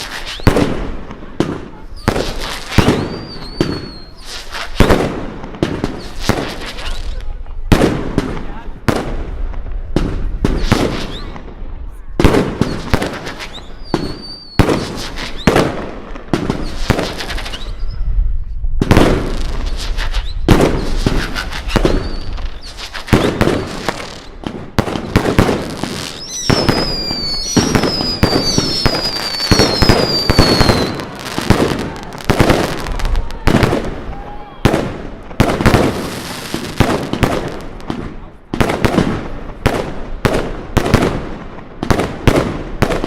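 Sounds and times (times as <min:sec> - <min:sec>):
fireworks bangs and crackling: 0:00.0 - 0:43.0
high whistles sliding down: 0:26.0 - 0:31.0.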